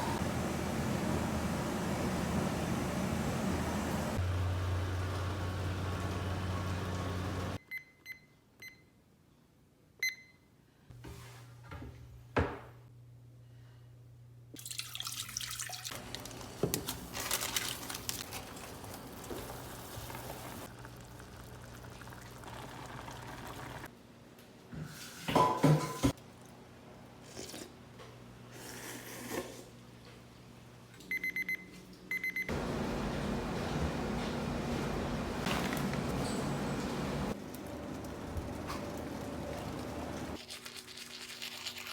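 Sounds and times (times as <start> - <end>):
tap water running: 14.6 - 23.9, 32.5 - 40.4
short electronic beeps: 31.1 - 32.5.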